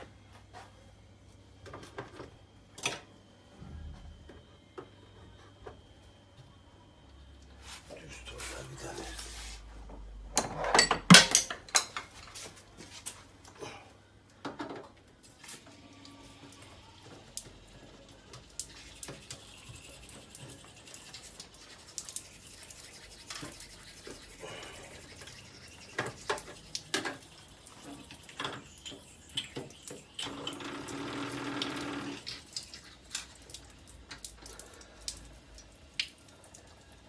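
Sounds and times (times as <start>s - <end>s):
metal tools clattering: 10.4s - 12.2s.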